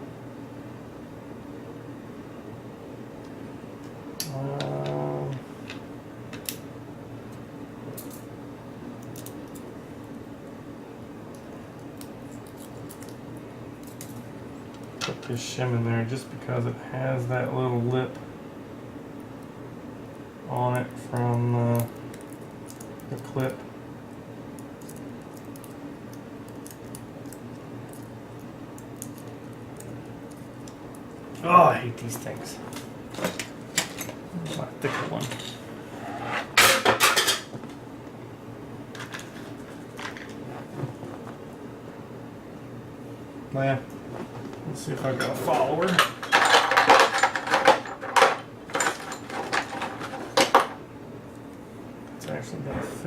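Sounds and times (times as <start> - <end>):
small metal tools clattering: 45.2 - 50.6.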